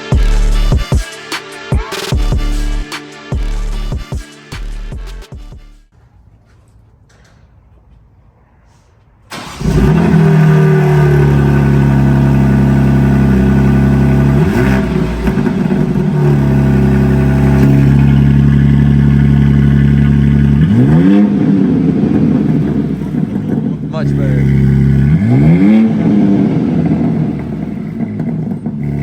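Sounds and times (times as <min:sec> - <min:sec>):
car engine starting and revving: 0:09.3 - 0:29.0.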